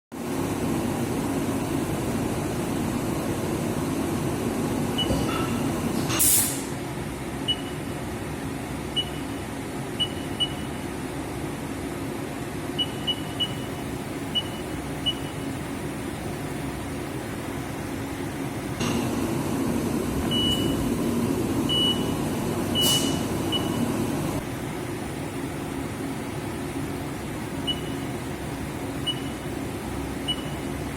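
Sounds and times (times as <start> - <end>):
machining center humming: 0.2 - 30.9
loud hiss of air: 6.0 - 6.8, 22.7 - 23.3.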